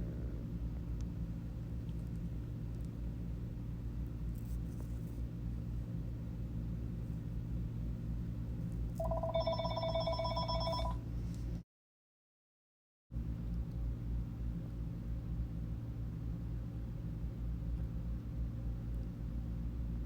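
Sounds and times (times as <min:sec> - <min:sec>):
low electrical hum: 0:00.0 - 0:11.6, 0:13.2 - 0:20.0
trilling electronic ring tone: 0:09.0 - 0:11.0.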